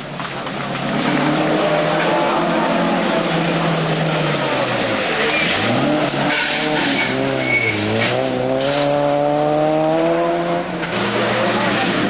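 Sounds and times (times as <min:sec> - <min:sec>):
rally car engine revving: 0:00.0 - 0:12.0
tyre squeals: 0:01.6 - 0:09.0.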